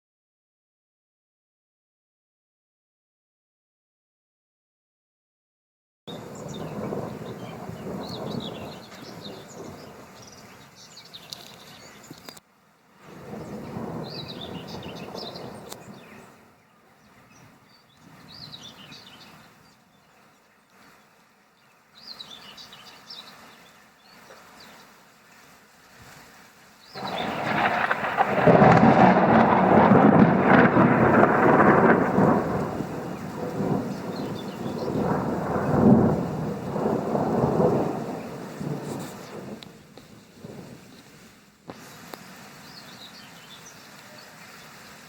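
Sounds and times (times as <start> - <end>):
loud thunderclap: 6.1 - 10.1, 13.1 - 16.0, 27.0 - 40.8
thunder rumbling: 6.1 - 10.2, 13.1 - 16.4, 26.9 - 41.0
bird chirps: 6.3 - 12.4, 13.3 - 25.0, 26.8 - 28.3, 41.8 - 45.0.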